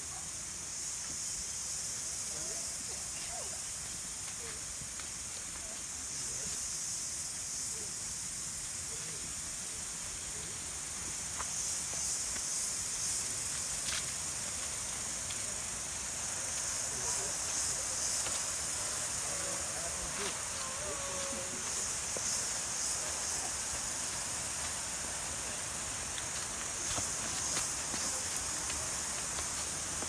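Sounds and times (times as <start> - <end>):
high-pitched insect drone: 11.3 - 30.0
faint distant voices: 15.4 - 30.0.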